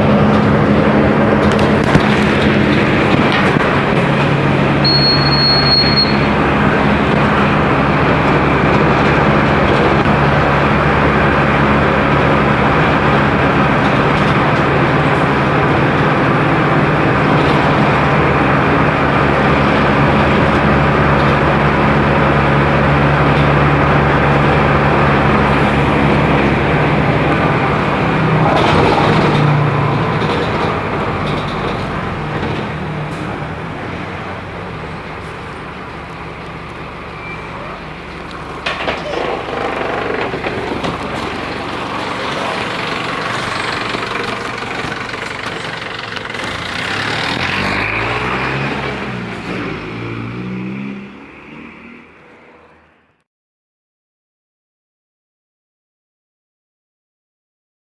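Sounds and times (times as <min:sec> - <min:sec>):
road and body noise: 0:00.0 - 0:52.8
diesel bus engine running: 0:00.0 - 0:52.9
high beep: 0:04.8 - 0:06.4.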